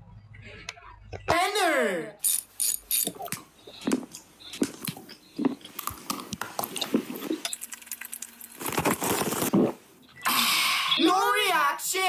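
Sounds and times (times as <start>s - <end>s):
person chewing crunchy food: 2.8s - 9.8s.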